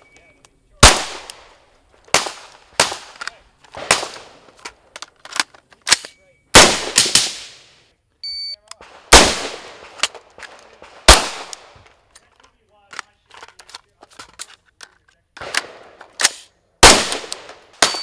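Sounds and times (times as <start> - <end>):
echoing gunshots: 0.8 - 4.6, 6.5 - 7.7, 8.8 - 11.8, 15.4 - 18.0
short electronic beep: 8.2 - 8.6.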